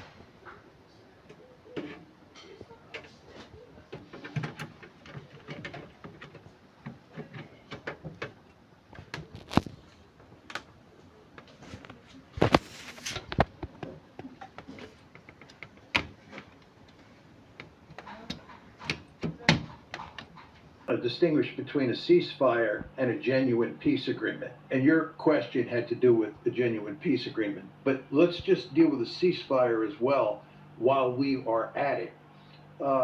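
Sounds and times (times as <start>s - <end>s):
clicks and knocks of handled objects: 1.3s - 10.7s, 11.4s - 20.7s.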